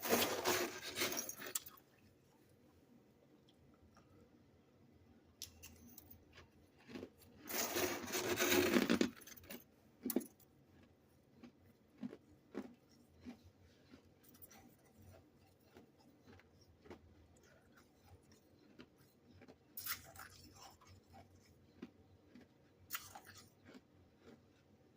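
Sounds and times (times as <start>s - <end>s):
frost being scraped: 0.0s - 1.5s, 7.5s - 9.2s
crisp clicks and crunches: 0.0s - 1.8s, 5.4s - 24.4s.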